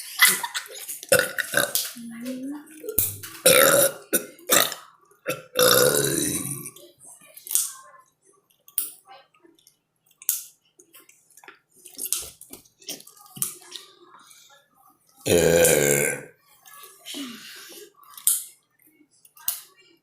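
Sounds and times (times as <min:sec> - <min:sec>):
loud long burp: 0:01.1 - 0:01.8, 0:03.0 - 0:06.7, 0:15.3 - 0:16.3.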